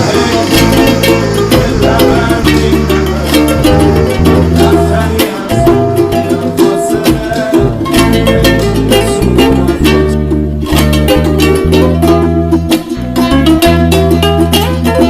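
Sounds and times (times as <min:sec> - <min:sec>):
plucked strings over bass line: 0:00.0 - 0:15.0.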